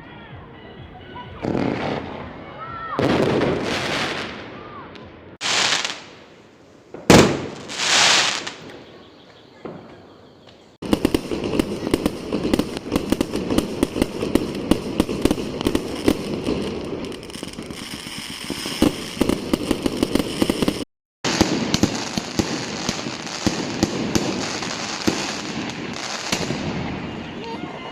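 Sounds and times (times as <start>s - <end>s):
firework bang: 1.4s - 2.4s, 3.0s - 6.3s, 6.9s - 10.1s, 10.8s - 27.2s
rapid firecracker crackling: 1.4s - 27.9s
hissing firework burst: 5.4s - 9.0s, 10.8s - 27.2s.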